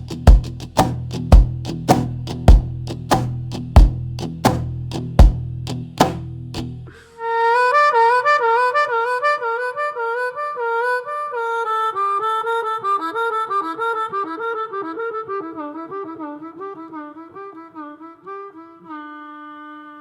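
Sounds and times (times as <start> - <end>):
blues harmonica melody: 6.9 - 20.0.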